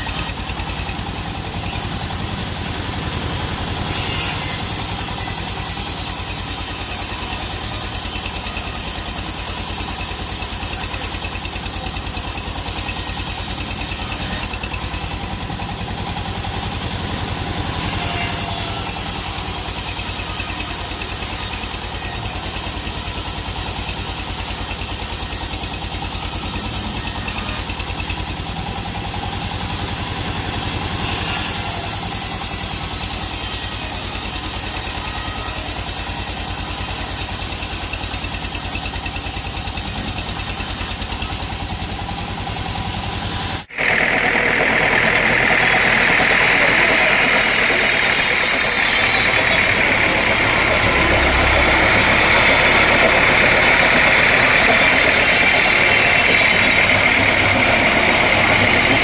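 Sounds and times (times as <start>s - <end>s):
low engine pulse: 44.0s - 59.0s.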